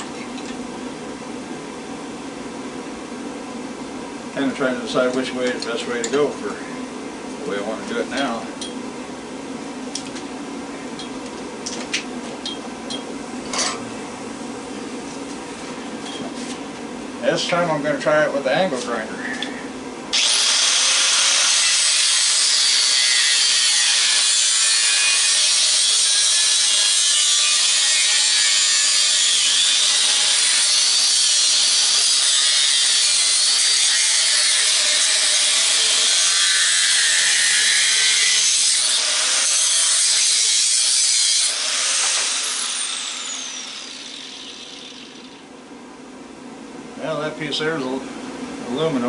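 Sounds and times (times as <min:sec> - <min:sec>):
grinder spinning down whine: 0:20.1 - 0:24.8
angle grinder cutting metal: 0:20.1 - 0:45.4.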